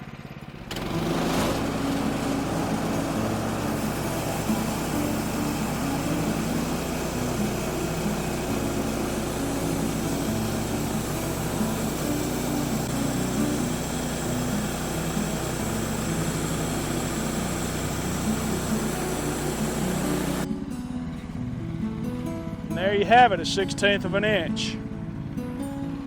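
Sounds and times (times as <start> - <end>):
small gasoline engine running: 0.0 - 26.0
bandsaw blade sawing log: 0.7 - 20.5.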